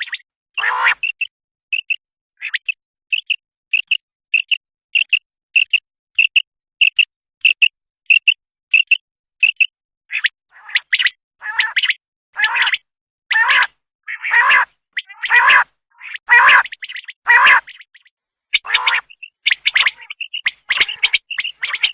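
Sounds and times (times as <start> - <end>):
quail calling: 0.0 - 1.3, 10.6 - 21.9.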